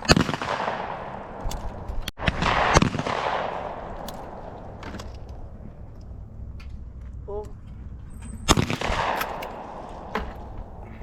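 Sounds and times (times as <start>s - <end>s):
distant gunshots: 0.0s - 1.4s, 2.2s - 4.5s, 8.4s - 10.9s
shotgun shot with echo: 2.2s - 3.9s.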